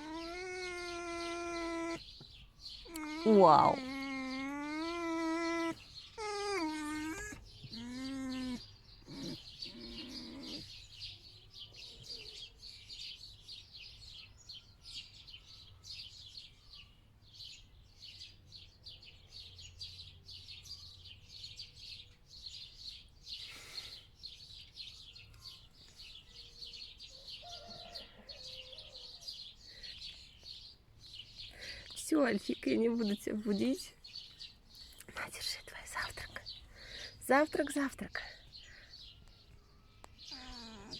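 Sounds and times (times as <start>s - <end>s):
fox whining: 0.0s - 10.8s, 40.1s - 40.9s
small birds twittering: 0.0s - 40.9s.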